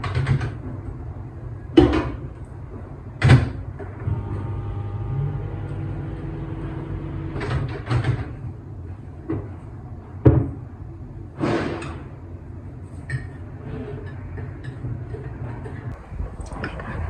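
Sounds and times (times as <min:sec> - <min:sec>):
low steady hum: 0:00.9 - 0:11.4.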